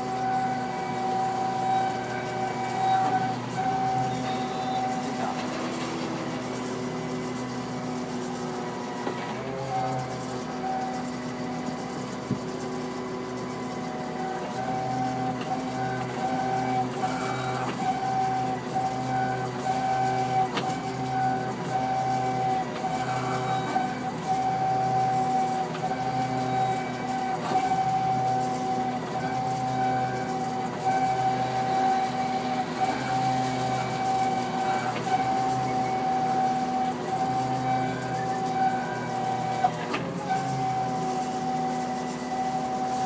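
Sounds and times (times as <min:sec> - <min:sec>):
high-pitched whine: 0:00.0 - 0:08.4
machine hum: 0:00.0 - 0:43.0.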